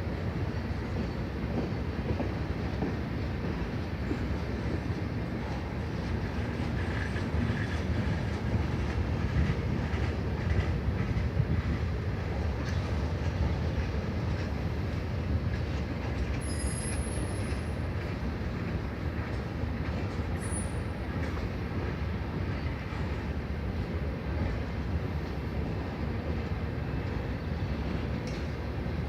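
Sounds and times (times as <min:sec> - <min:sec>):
freight train rumbling past: 0:00.0 - 0:29.0
faint wheel squeal: 0:16.4 - 0:17.6.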